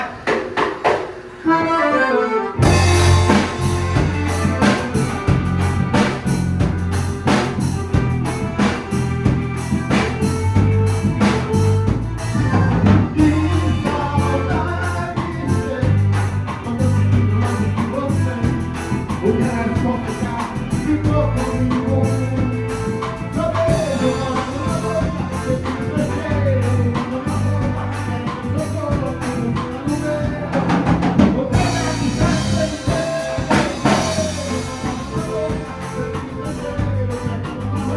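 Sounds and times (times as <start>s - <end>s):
drum kit steady beat: 0.0s - 37.9s
bass line: 1.4s - 37.9s
person singing: 1.5s - 37.9s.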